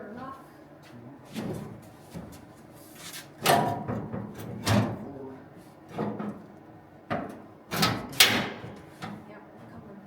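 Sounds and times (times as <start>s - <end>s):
sheet metal knocks and clanks: 7.1s - 9.2s.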